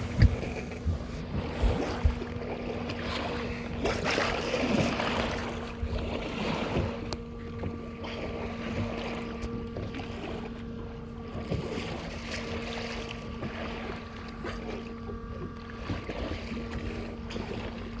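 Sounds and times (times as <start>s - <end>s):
wind buffeting microphone: 0.0s - 4.2s
boat engine humming: 0.0s - 18.0s.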